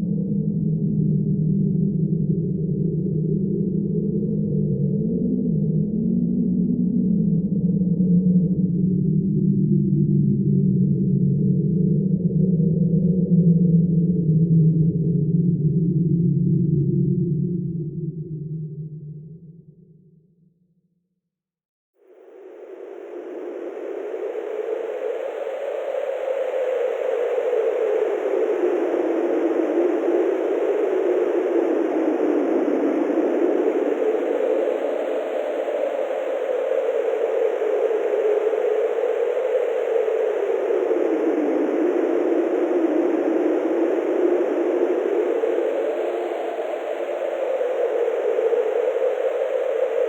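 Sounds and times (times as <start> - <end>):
strong steady wind: 22.1 - 50.0.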